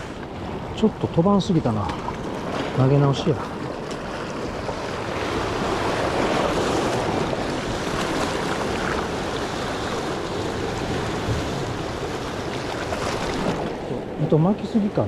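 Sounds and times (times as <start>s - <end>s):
surf on rocky shore: 0.0s - 15.0s
wind on microphone: 3.4s - 14.2s.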